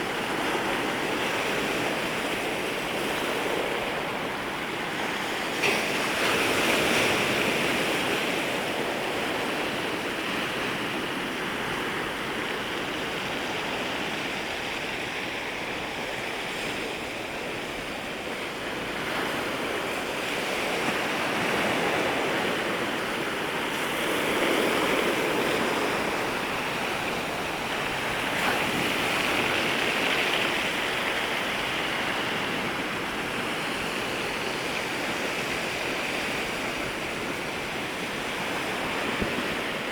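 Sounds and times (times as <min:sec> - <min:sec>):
sea waves breaking on shore: 0:00.0 - 0:39.9.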